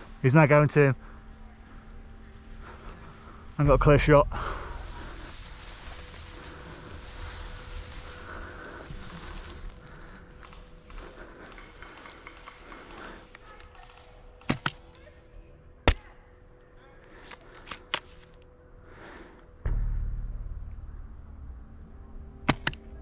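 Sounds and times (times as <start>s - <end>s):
faint rustling: 4.7s - 12.2s
rifle bolt clicks: 15.9s - 16.1s
airsoft rifle shot: 15.9s - 16.2s.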